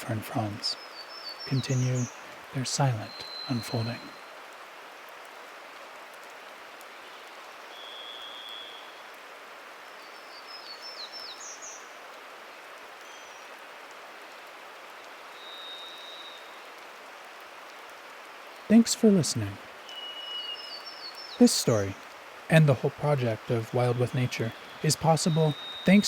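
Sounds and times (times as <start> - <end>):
small bird twittering: 0.0 - 4.3, 7.7 - 9.0, 15.4 - 16.6, 19.8 - 22.0, 23.4 - 26.0
rainwater dripping from trees: 0.0 - 26.0
thrush whistled notes: 23.6 - 26.0.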